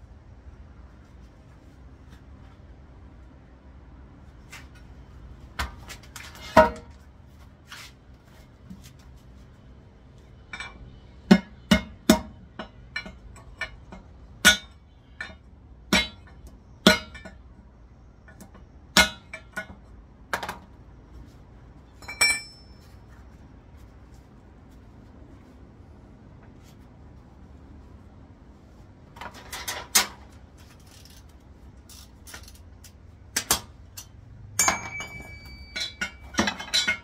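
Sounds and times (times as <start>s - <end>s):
metal tools clinking: 21.9s - 23.1s, 33.9s - 37.0s.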